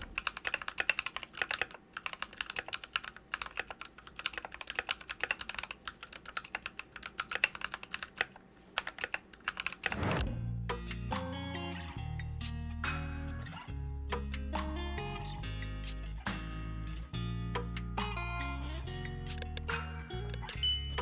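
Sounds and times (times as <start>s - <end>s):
mechanical keyboard typing: 0.0s - 10.1s
whoosh: 9.9s - 10.5s.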